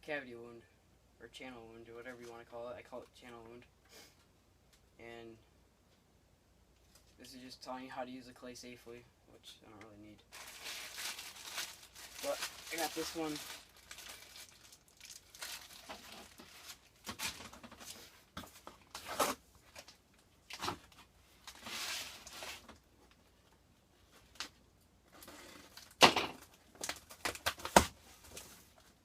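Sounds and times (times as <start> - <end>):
paper rustling and tearing: 10.4 - 18.1, 21.5 - 22.7.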